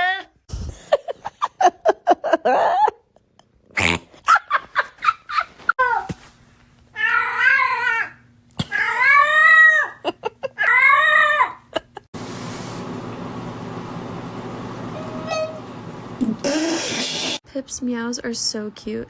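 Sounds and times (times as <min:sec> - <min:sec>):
cat meowing: 0:15.0 - 0:15.6
cat hissing: 0:16.4 - 0:17.4.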